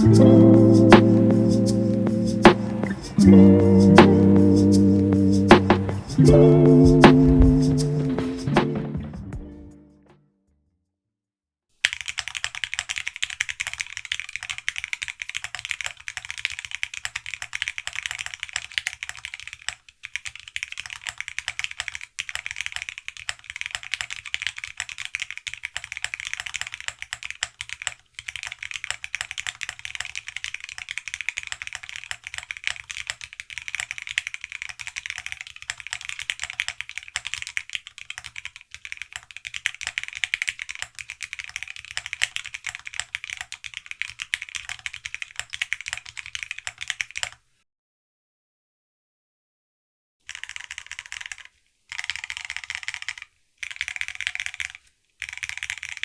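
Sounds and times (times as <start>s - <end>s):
mechanical keyboard typing: 0.0s - 0.2s, 11.8s - 47.4s, 50.3s - 56.0s.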